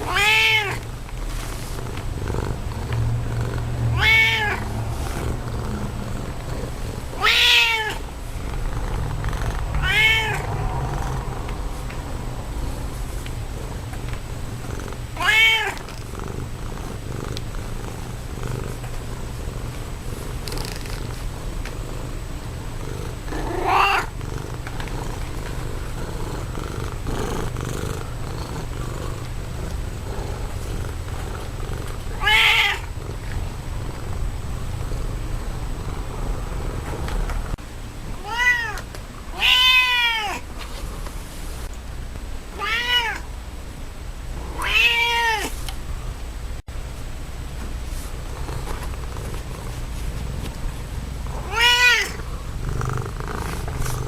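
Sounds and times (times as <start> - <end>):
cat meowing: 0.0 - 0.8, 3.9 - 4.7, 7.2 - 8.0, 9.8 - 10.5, 15.2 - 15.8, 23.4 - 24.2, 32.2 - 32.9, 38.2 - 40.4, 42.6 - 43.3, 44.6 - 45.6, 51.4 - 52.2
cat purring: 1.3 - 11.8, 12.6 - 37.6, 48.3 - 50.6, 51.2 - 54.0.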